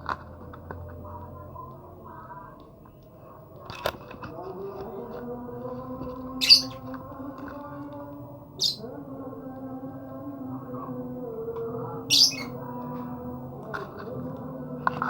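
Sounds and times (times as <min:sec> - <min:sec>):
lovebird squawking: 0:06.4 - 0:06.8, 0:08.6 - 0:08.8, 0:12.1 - 0:12.6.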